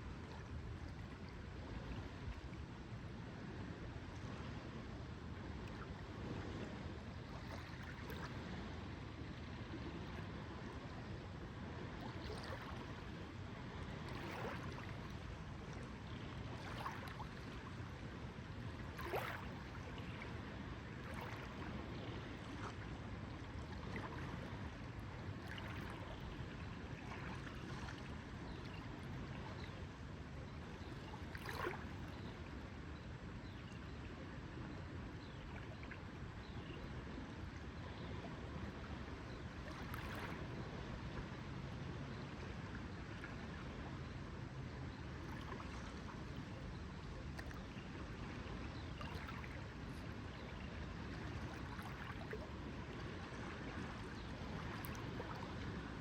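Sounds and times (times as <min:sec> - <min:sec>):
lake water lapping: 0:12.0 - 0:18.0, 0:18.6 - 0:29.7, 0:30.8 - 0:32.3, 0:39.6 - 0:41.3, 0:45.1 - 0:56.0
small splashes and plops: 0:18.9 - 0:19.8, 0:39.6 - 0:40.4, 0:47.3 - 0:47.8, 0:49.0 - 0:49.6.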